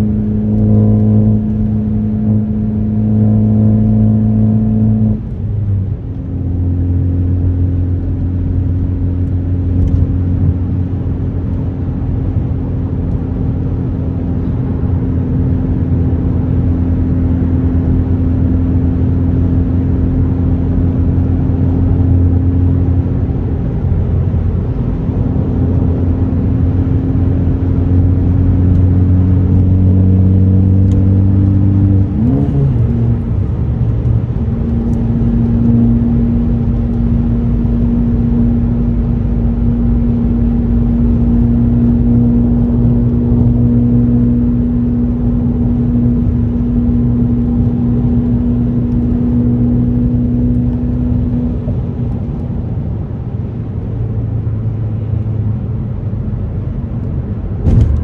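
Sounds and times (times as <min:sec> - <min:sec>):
car engine cruising: 0:00.0 - 0:58.0
road rumble: 0:00.0 - 0:58.0.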